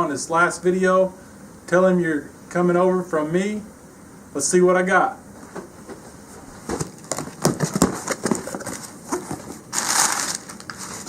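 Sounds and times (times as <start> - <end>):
cardboard rustling and tearing: 6.8 - 11.0.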